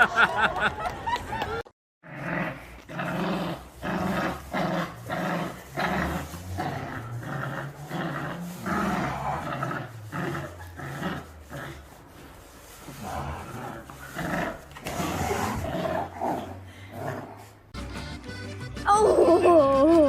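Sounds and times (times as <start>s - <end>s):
dog growling: 2.0s - 17.6s.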